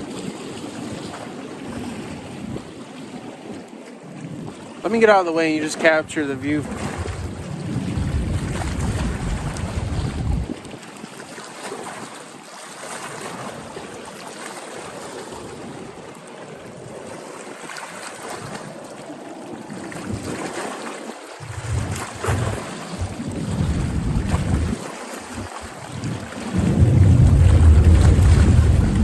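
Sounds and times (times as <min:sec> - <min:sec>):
wind buffeting microphone: 0:05.8 - 0:10.8, 0:21.4 - 0:29.0
water washing: 0:06.5 - 0:10.6, 0:21.4 - 0:29.0.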